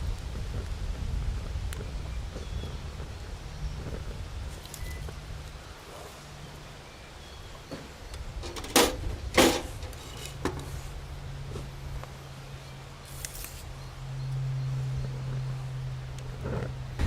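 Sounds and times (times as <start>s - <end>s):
handling noise knocks: 7.7s - 10.7s.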